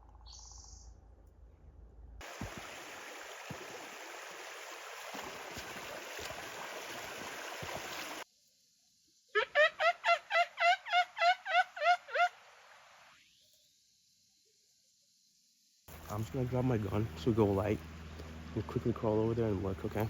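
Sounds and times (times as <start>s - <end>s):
rushing flowing water: 2.2s - 8.2s.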